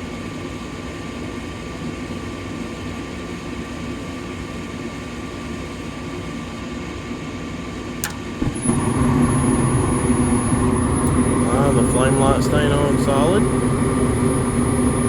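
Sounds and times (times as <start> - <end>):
gas furnace humming: 7.8 - 15.0
furnace click: 8.0 - 13.6
blower running: 8.0 - 15.0.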